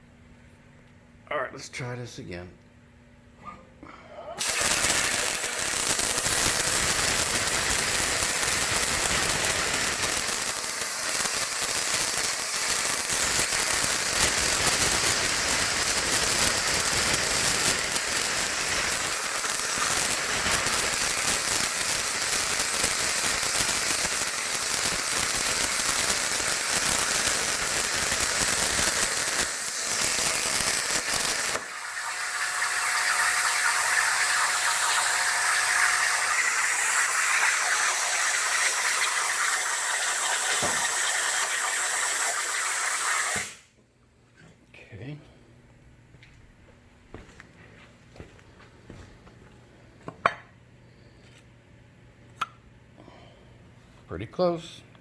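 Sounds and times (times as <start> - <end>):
plasma cutter crackling hiss: 4.4 - 43.7.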